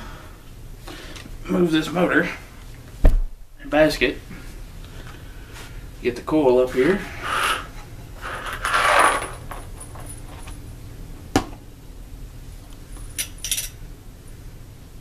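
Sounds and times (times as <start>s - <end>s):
scrape on workbench: 6.7s - 9.4s.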